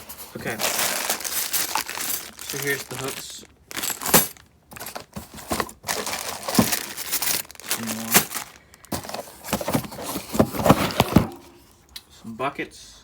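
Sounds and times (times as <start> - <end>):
plastic packaging crinkling: 0.1 - 11.4.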